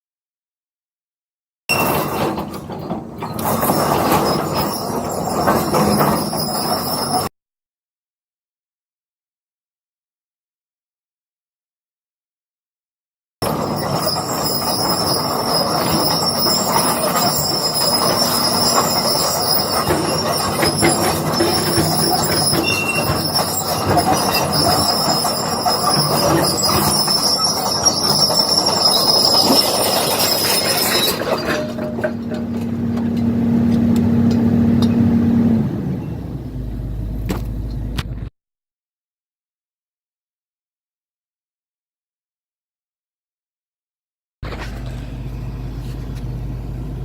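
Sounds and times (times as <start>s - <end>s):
excavator running: 1.7s - 7.3s, 13.4s - 38.3s, 44.4s - 47.0s
steel tracks squealing and clanking: 1.7s - 7.3s, 13.4s - 36.8s.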